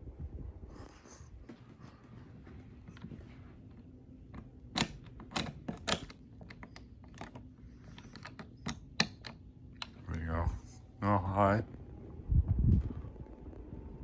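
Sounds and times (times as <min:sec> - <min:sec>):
ceiling fan motor humming: 0:00.0 - 0:14.0
sharp clicks: 0:04.8 - 0:10.0.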